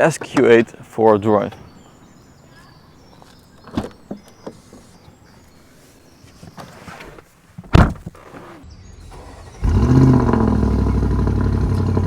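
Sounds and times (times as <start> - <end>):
car door thudding shut: 7.6 - 8.6
car engine starting and idling: 8.2 - 12.0.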